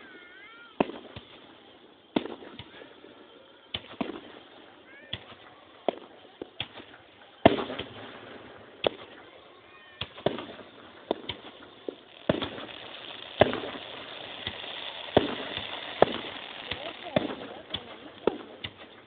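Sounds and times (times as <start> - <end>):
fireworks bangs: 0.0 - 19.0.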